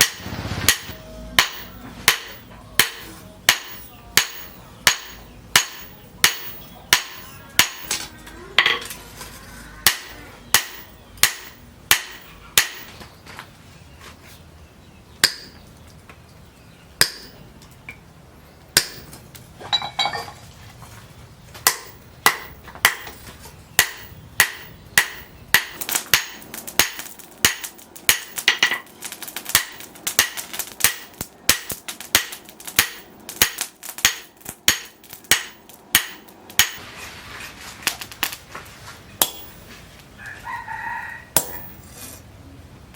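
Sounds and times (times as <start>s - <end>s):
hammer striking steel: 0.0s - 9.0s, 9.8s - 13.0s, 15.2s - 15.6s, 17.0s - 17.4s, 18.8s - 20.3s, 21.6s - 28.9s, 29.5s - 36.8s, 39.2s - 39.7s, 41.4s - 41.9s.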